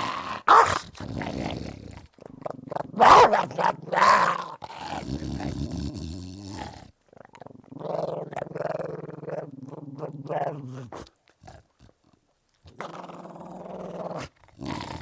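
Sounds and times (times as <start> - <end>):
dog growling low: 0.0 - 12.0, 12.7 - 15.0
dog barking: 0.5 - 0.8, 3.0 - 3.8.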